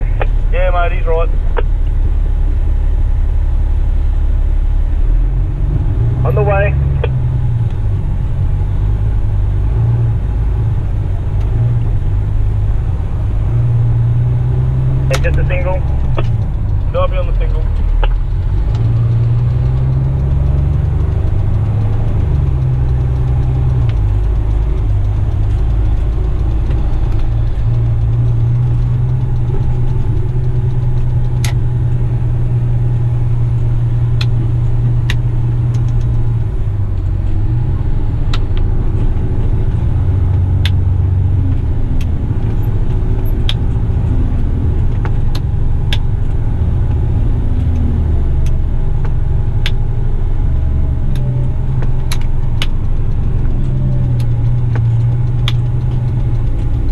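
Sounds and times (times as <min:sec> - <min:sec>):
sharp clicks: 0:14.6 - 0:32.2, 0:37.9 - 0:56.9.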